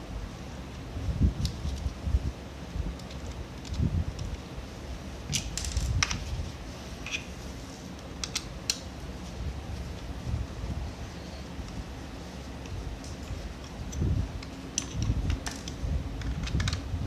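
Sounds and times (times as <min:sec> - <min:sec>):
low steady rumble: 0:00.0 - 0:17.0
plastic and metal parts clicking: 0:14.4 - 0:16.8.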